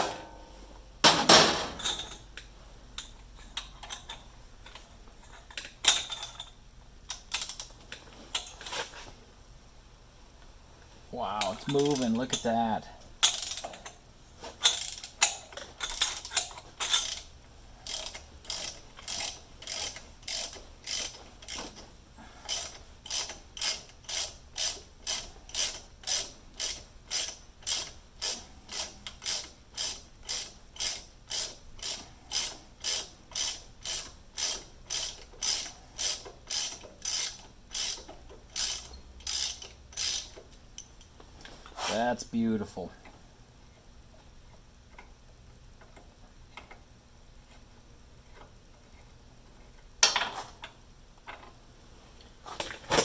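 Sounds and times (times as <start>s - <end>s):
ratchet wrench clicking: 7.1s - 7.8s, 11.4s - 12.5s, 13.2s - 14.0s, 14.6s - 21.8s, 22.4s - 41.0s.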